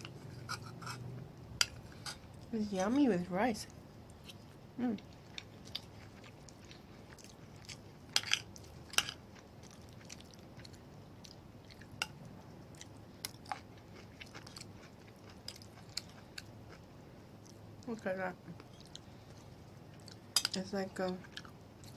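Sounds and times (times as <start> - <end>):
person chewing food: 4.0 - 17.9, 18.6 - 20.5, 21.2 - 21.9.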